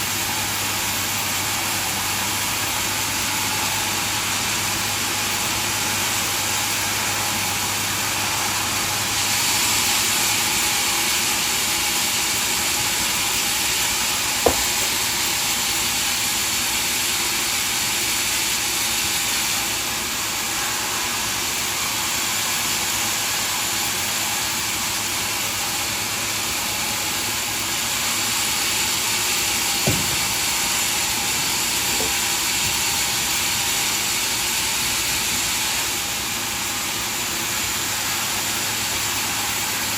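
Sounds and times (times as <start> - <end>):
sawmill machinery hissing: 0.0 - 39.9
sharp knock: 14.4 - 15.1, 29.8 - 30.6.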